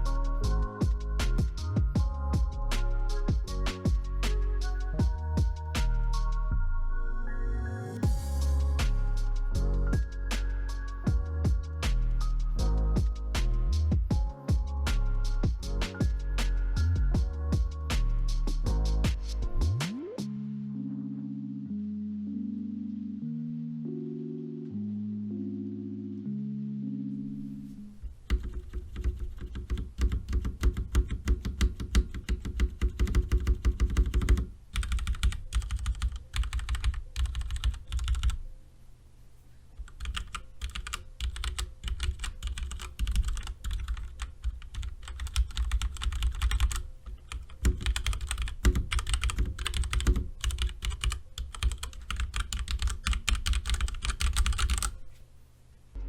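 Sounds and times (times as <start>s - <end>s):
fast mechanical keyboard typing: 28.2s - 38.4s, 39.8s - 55.0s.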